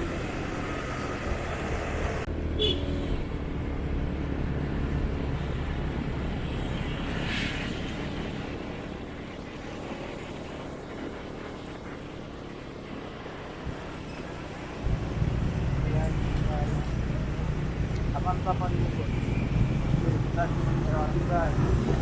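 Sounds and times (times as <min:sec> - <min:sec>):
road and wind noise: 0:00.0 - 0:22.0
motorcycle engine running: 0:14.6 - 0:21.2.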